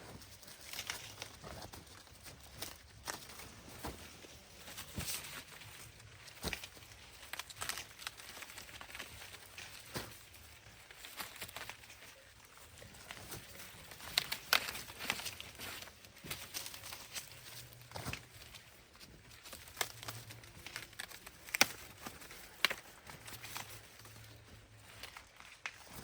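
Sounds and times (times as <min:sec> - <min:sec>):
dry corn plants rustling: 0:00.0 - 0:26.0
corn stalks snapping: 0:12.8 - 0:17.3, 0:19.6 - 0:23.7.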